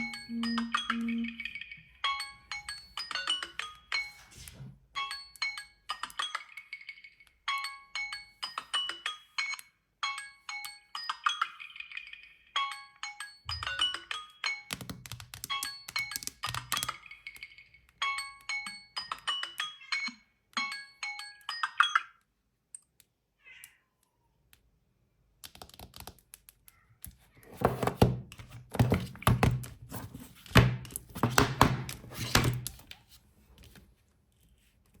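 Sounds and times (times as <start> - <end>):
marimba-like phone ringtone: 0.0 - 1.7.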